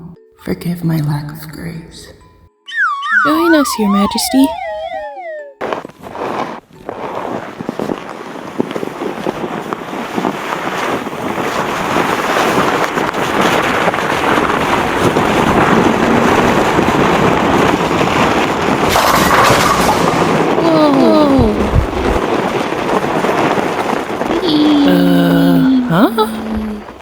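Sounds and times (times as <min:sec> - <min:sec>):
rushing wind: 0:06.2 - 0:24.7.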